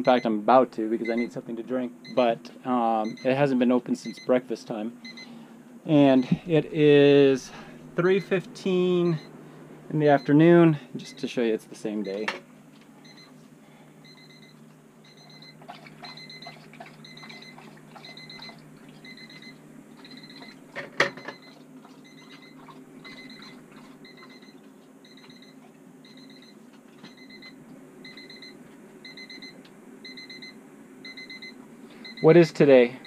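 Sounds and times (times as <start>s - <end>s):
steady low hum: 0.0s - 33.0s
high electronic alarm beeps: 1.0s - 1.3s, 3.0s - 3.4s, 9.0s - 9.3s, 14.1s - 20.6s, 22.1s - 32.5s.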